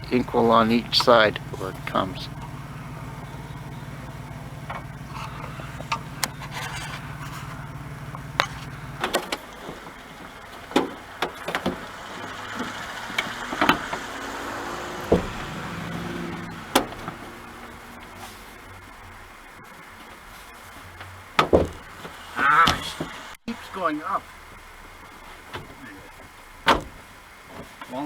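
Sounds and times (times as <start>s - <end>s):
low mechanical hum: 0.0s - 23.4s
plastic parts clicking and knocking: 8.2s - 11.9s.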